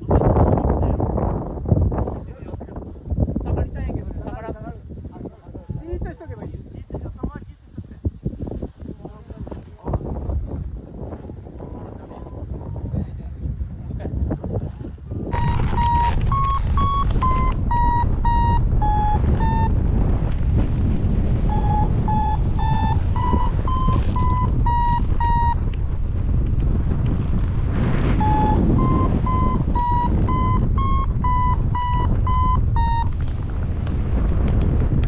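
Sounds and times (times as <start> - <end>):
wind noise on microphone: 0.0 - 35.0
variometer short beeps: 15.3 - 19.8, 21.5 - 25.8, 28.1 - 33.2.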